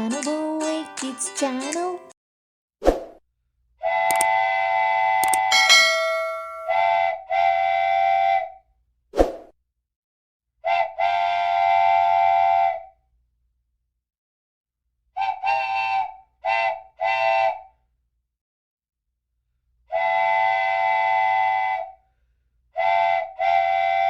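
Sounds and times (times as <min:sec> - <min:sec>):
multi-tone horn blasts: 0:05.6 - 0:07.1.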